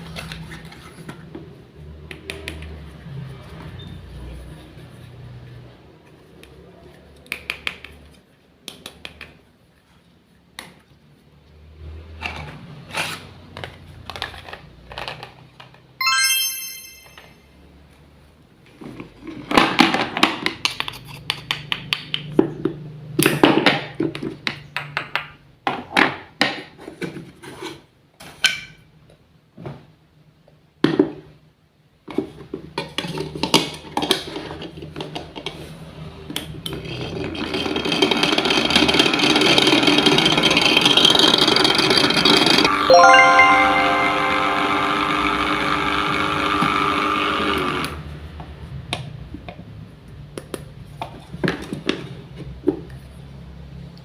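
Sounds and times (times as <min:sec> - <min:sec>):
high ringing chime tones: 0:16.0 - 0:17.4, 0:42.8 - 0:45.5.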